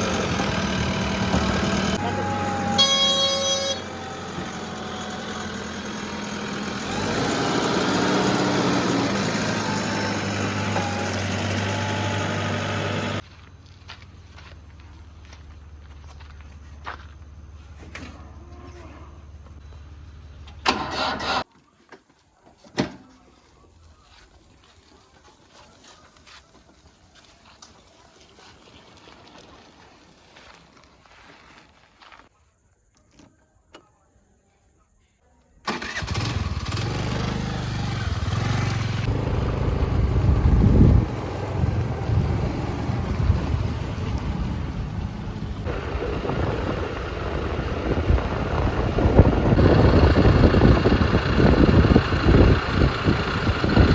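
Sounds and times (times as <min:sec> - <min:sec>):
diesel engine droning: 0:00.0 - 0:21.4, 0:35.7 - 0:53.9.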